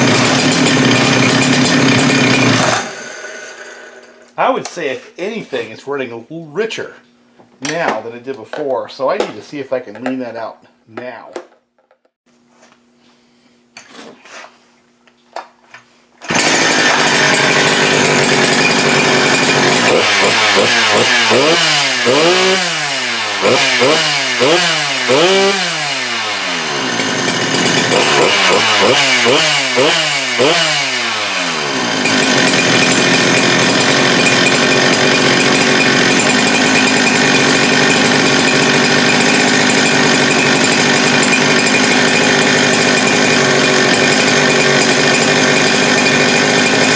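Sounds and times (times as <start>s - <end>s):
chainsaw revving: 0.0s - 4.4s, 16.2s - 46.9s.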